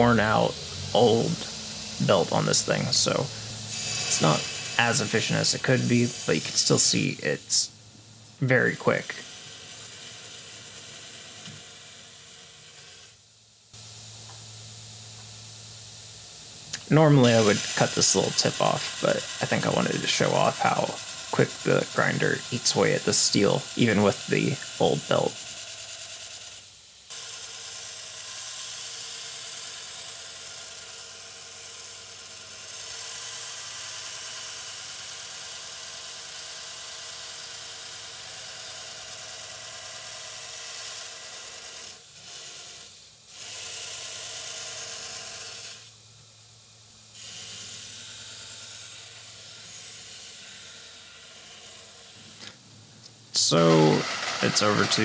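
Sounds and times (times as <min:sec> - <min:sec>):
belt grinder grinding steel: 0:00.0 - 0:07.7, 0:08.5 - 0:13.2, 0:16.7 - 0:46.0, 0:47.1 - 0:52.6, 0:53.4 - 0:55.0
machine hum: 0:00.0 - 0:13.1, 0:13.8 - 0:25.6, 0:49.2 - 0:55.0.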